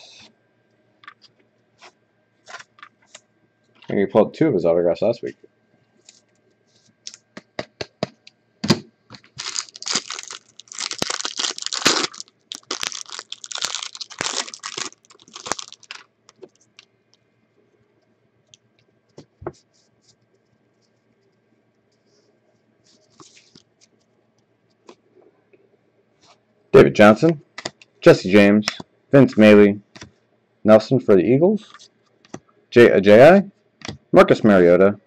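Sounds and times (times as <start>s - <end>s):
foil wrapper tearing and crinkling: 9.2s - 16.1s.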